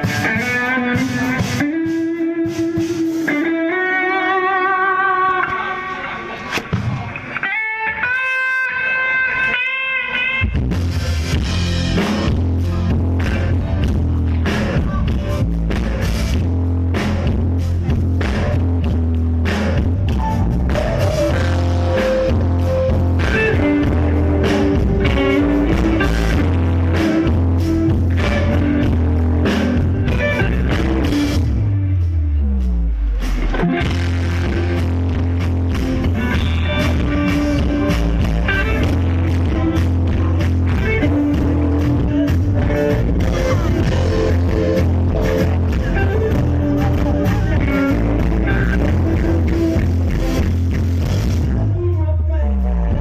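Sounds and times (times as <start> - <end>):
bass guitar: 0.0 - 53.0
drums: 0.0 - 53.0
electric guitar notes: 0.0 - 53.0.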